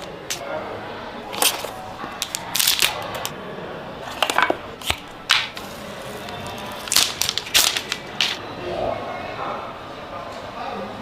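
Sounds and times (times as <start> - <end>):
packaging rustling and clicking: 1.3 - 3.3, 4.2 - 8.4.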